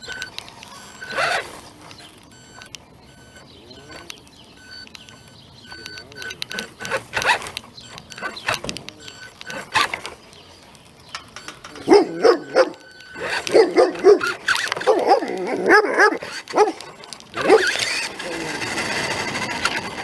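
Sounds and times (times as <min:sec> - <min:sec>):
dog barking loudly: 0:11.9 - 0:18.0.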